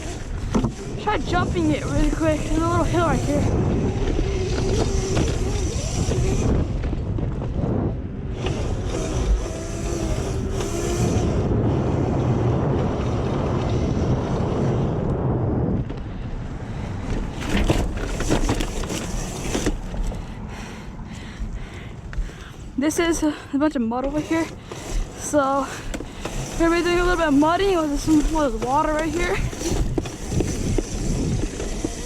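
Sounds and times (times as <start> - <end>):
electric motor whine: 0.0 - 32.0
wind noise on microphone: 0.0 - 32.0.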